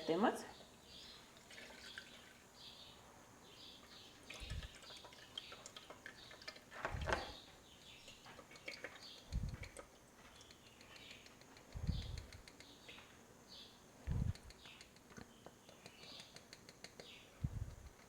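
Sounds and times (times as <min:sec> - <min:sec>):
faint bird chirps: 0:00.4 - 0:18.0
juice trickling and dripping: 0:01.0 - 0:02.7, 0:04.0 - 0:12.6.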